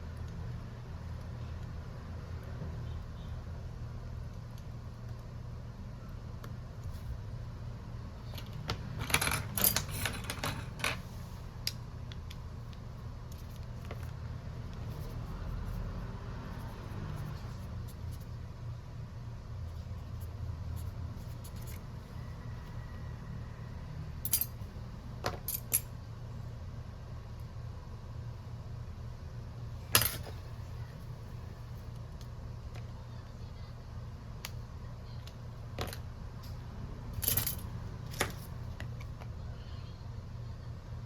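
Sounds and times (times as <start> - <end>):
steady low hum: 0.0 - 41.0
metal tools clinking on bench: 9.0 - 11.0, 24.3 - 24.6.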